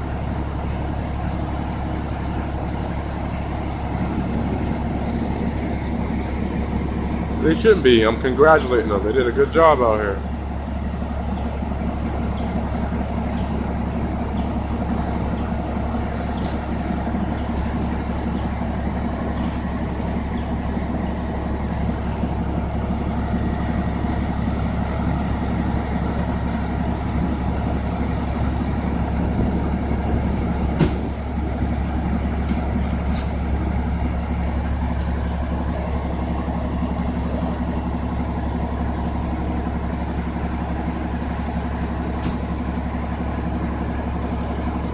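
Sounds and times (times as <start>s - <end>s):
diesel engine idling: 0.0s - 44.9s.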